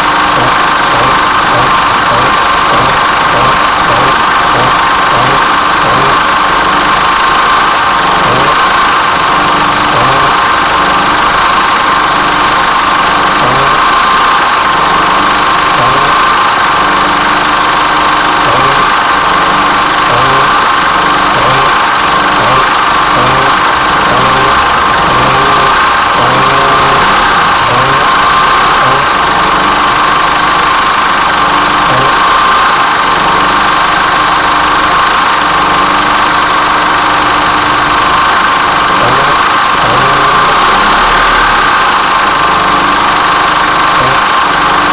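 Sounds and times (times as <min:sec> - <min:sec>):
brief strange engine noise: 0:00.0 - 0:16.2, 0:18.4 - 0:32.6
diesel engine idling: 0:00.0 - 0:44.9.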